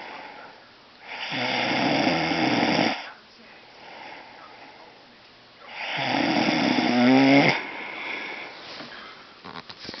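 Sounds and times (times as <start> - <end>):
soft breath: 0.0 - 1.3, 3.0 - 5.0, 7.6 - 10.0
person snoring: 1.1 - 3.1, 5.7 - 8.5.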